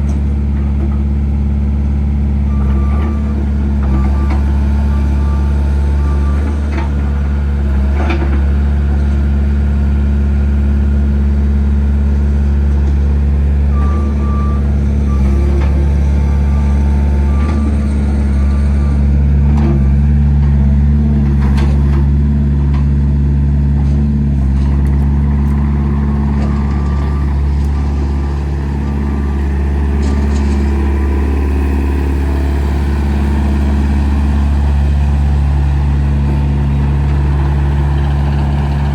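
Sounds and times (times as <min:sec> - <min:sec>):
excavator diesel engine running: 0:00.0 - 0:38.9
travel alarm beeps: 0:13.7 - 0:19.0, 0:26.3 - 0:34.8.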